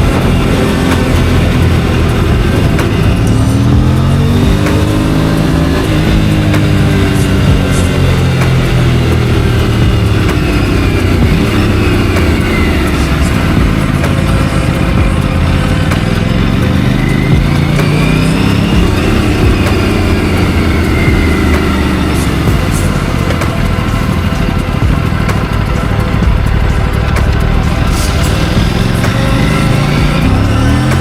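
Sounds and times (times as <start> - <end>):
motorcycle engine revving: 0.0 - 31.0.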